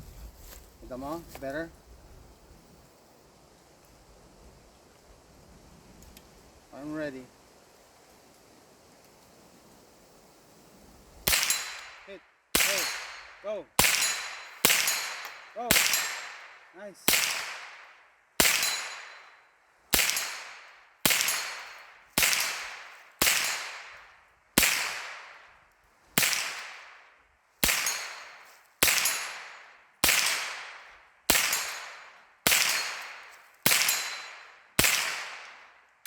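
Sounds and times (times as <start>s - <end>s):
rifle shots with echo: 11.2s - 25.6s, 26.2s - 35.8s.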